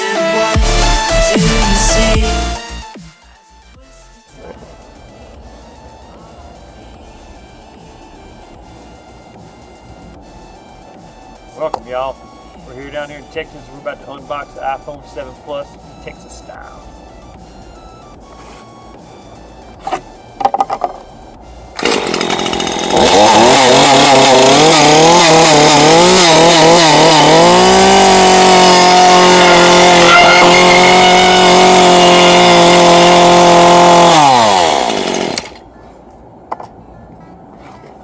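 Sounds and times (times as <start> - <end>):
chainsaw cutting into box: 18.4 - 18.7, 19.8 - 21.0, 21.8 - 35.6.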